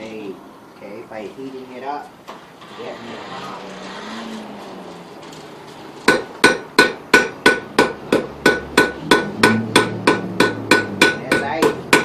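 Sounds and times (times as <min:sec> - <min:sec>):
hammer striking steel on anvil: 0:06.1 - 0:12.0.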